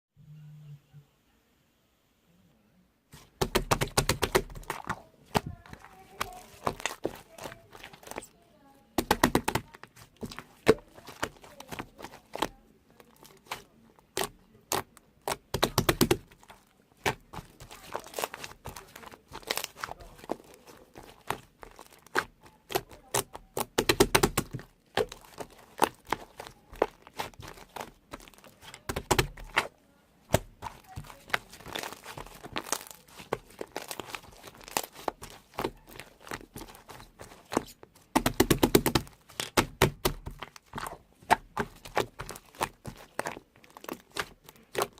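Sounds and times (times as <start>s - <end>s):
handling clicks taps and crinkling: 3.6s - 8.4s, 9.0s - 29.7s, 30.3s - 44.9s.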